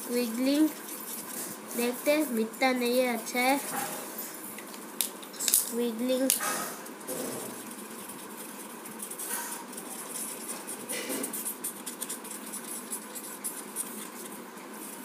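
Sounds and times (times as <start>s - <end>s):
marker scribbling on cardboard: 0.0s - 3.6s, 7.1s - 15.0s.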